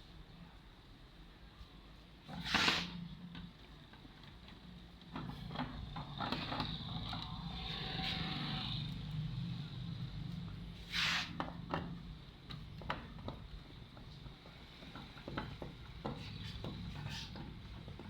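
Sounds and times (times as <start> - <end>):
hissy scraping: 2.3 - 3.1, 10.8 - 11.6
short hiss: 2.4 - 3.0, 10.9 - 11.4.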